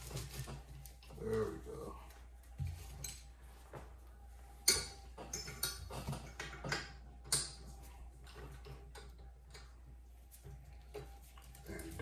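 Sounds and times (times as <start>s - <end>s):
metal parts clicking and clinking: 4.7s - 7.7s.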